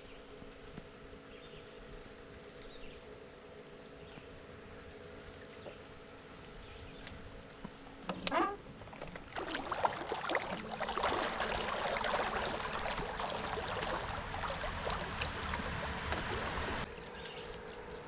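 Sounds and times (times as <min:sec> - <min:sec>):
fish splashing at water surface: 0:09.1 - 0:16.9.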